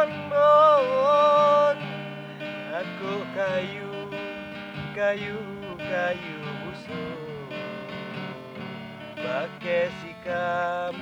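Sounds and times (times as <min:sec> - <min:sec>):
person singing: 0:00.0 - 0:08.6
strummed acoustic guitar: 0:00.0 - 0:11.0.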